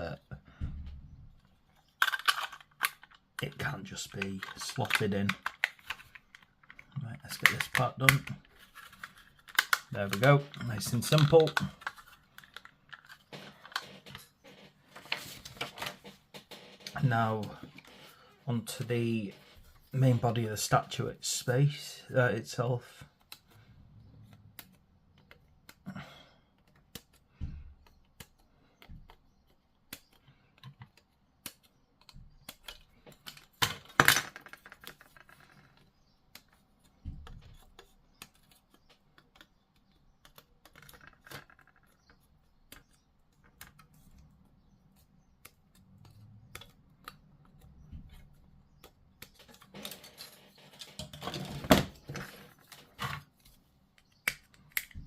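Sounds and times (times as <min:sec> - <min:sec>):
plastic parts clicking: 0:01.4 - 0:18.1, 0:24.2 - 0:55.0
plastic parts clattering: 0:01.7 - 0:18.1, 0:32.4 - 0:38.0, 0:48.0 - 0:53.4.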